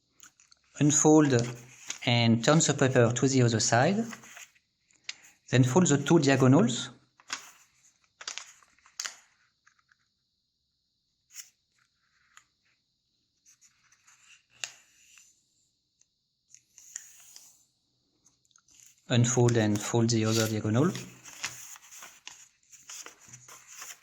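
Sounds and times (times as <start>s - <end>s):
paper crackling and crinkling: 1.2s - 2.1s, 3.9s - 4.5s, 7.2s - 9.8s, 18.7s - 24.0s
paper rustle: 1.2s - 2.1s, 3.8s - 4.6s, 7.2s - 9.9s, 13.5s - 15.0s, 18.7s - 24.0s.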